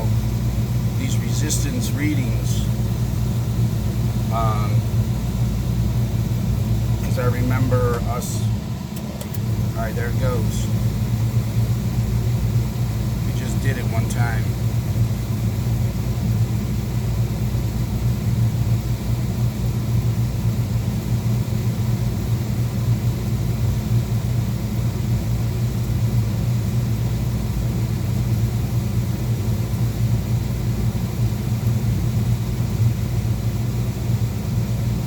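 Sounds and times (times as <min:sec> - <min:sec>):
oil burner rumbling: 0:00.0 - 0:35.0.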